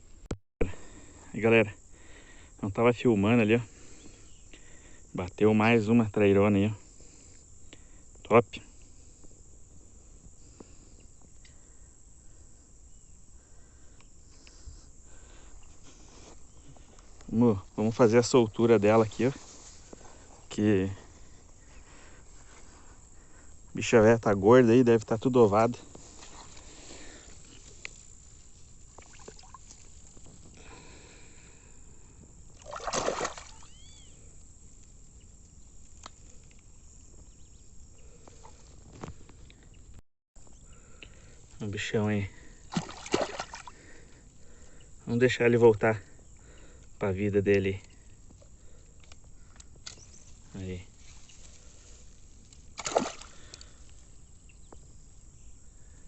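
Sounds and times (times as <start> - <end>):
high-pitched insect chorus: 0.0 - 56.0
quiet lakeside background: 0.0 - 56.0
water splash: 32.6 - 33.7, 42.7 - 43.7, 52.8 - 53.3
faint clicks: 46.4 - 50.1.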